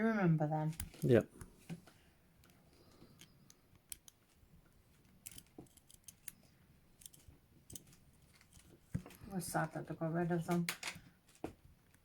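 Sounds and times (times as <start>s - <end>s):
lock pick clicking in padlock: 3.2s - 4.2s, 5.2s - 6.4s.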